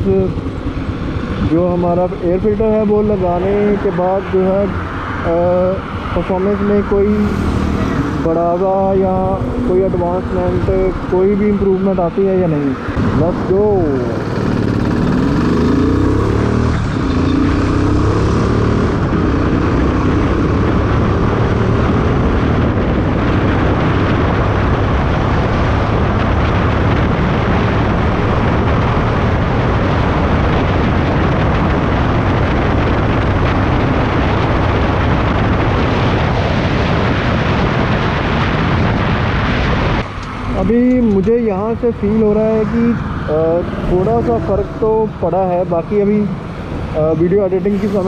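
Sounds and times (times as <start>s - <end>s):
loud wind rush: 0.0s - 48.0s
motorcycle engine accelerating: 12.6s - 48.0s.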